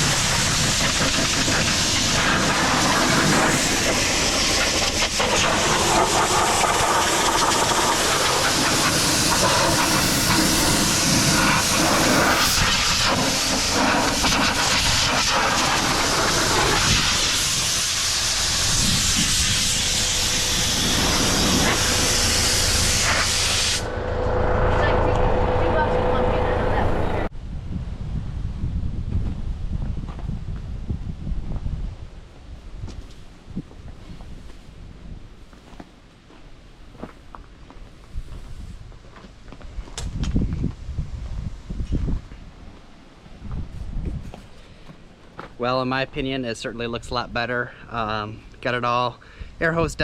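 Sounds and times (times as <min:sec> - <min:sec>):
compressed air hissing from blowgun: 0:00.0 - 0:23.9.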